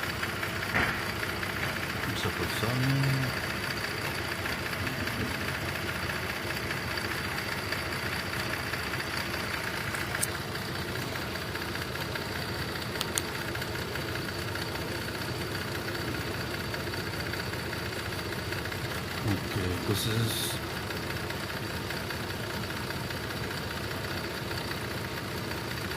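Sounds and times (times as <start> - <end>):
car engine idling: 0.0 - 25.9.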